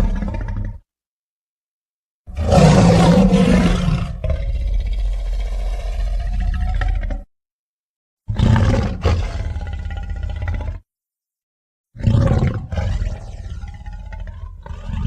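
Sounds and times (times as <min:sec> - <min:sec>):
cartoon dinosaur roars: 0:00.0 - 0:00.8, 0:02.3 - 0:07.3, 0:08.3 - 0:10.8, 0:12.0 - 0:15.0.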